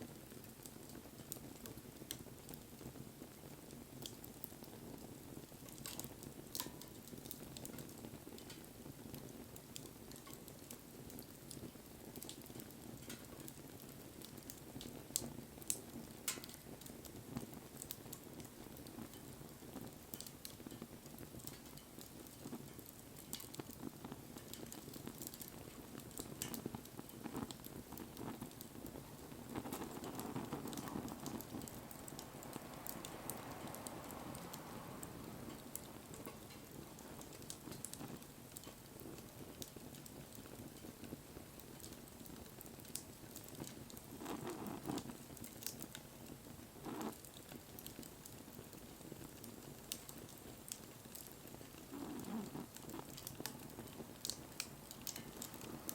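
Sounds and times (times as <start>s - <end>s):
burning wood crackling and popping: 0.0s - 55.9s
rustle of bonfire flames: 0.0s - 55.9s.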